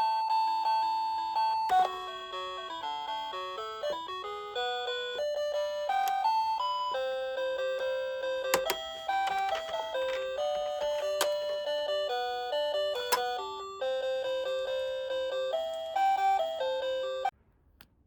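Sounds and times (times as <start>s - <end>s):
gentle bell-like melody: 0.6s - 17.3s
sharp clicks: 8.6s - 11.5s.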